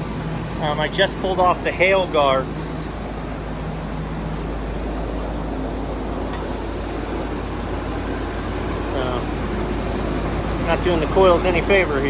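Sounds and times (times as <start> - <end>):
low hum: 0.0 - 12.0.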